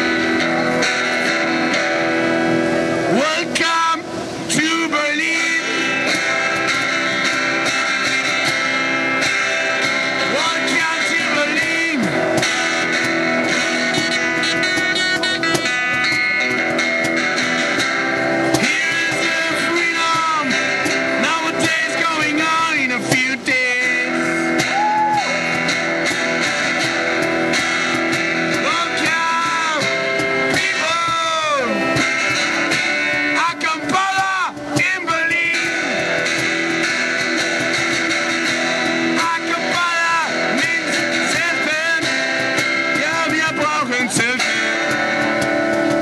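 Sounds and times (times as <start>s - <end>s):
strummed guitar music: 0.0s - 46.0s
voices: 39.1s - 46.0s.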